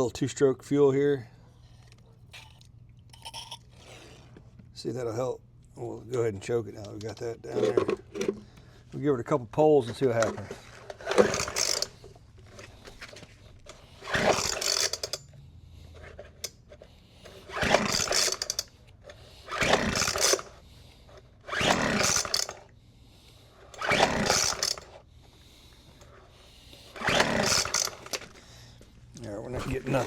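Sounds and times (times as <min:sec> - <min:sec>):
recoil starter pulls: 0:10.0 - 0:15.3, 0:16.0 - 0:22.7, 0:23.6 - 0:25.0, 0:26.9 - 0:28.4
engine turning over: 0:11.0 - 0:12.0, 0:14.0 - 0:15.2, 0:17.4 - 0:18.7, 0:19.4 - 0:20.6, 0:21.5 - 0:22.6, 0:23.7 - 0:25.0, 0:27.0 - 0:28.3.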